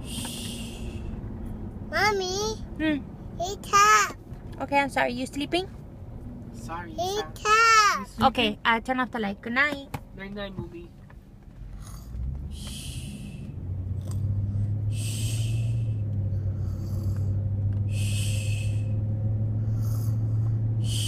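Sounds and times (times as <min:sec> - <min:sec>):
low hum: 0:00.0 - 0:03.4, 0:11.5 - 0:21.0
breathy hissing snores: 0:11.8 - 0:13.3, 0:16.4 - 0:18.9, 0:19.6 - 0:21.0.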